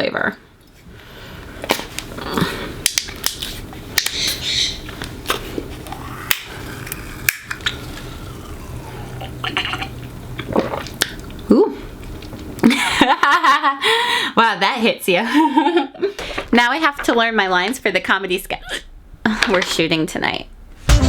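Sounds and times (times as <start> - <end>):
steady low hum: 5.0 - 12.5, 16.2 - 21.0.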